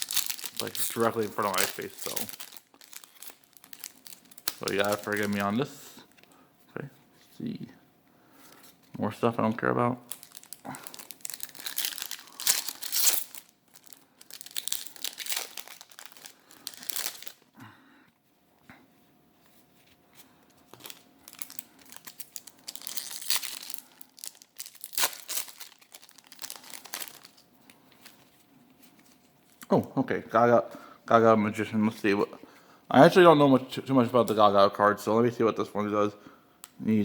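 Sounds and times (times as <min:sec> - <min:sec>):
crinkly packaging rustling: 0:00.0 - 0:06.3, 0:10.0 - 0:17.5, 0:20.6 - 0:29.6.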